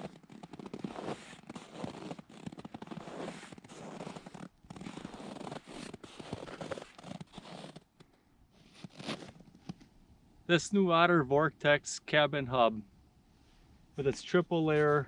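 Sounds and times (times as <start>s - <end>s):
fabric and zippers rasping: 0.0s - 8.0s, 8.6s - 9.8s.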